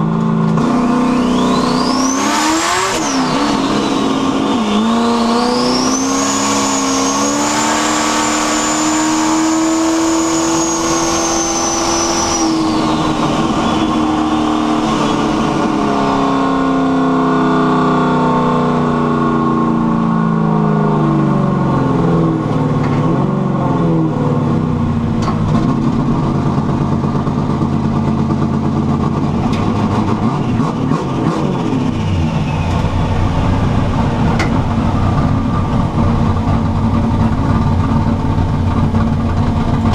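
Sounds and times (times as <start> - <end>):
engine revving: 0.0 - 20.1, 20.7 - 39.9
turbo whistle: 1.0 - 8.8, 9.4 - 15.7.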